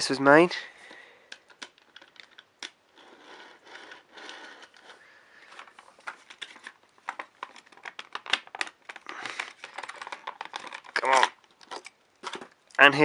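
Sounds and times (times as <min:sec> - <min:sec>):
packaging rustling and crinkling: 0:04.0 - 0:12.8.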